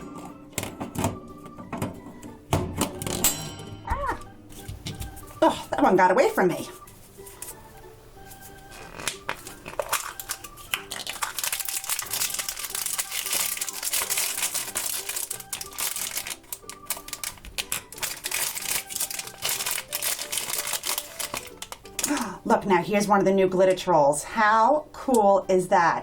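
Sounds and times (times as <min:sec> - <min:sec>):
foil bag crinkling and tearing: 0:08.7 - 0:22.4.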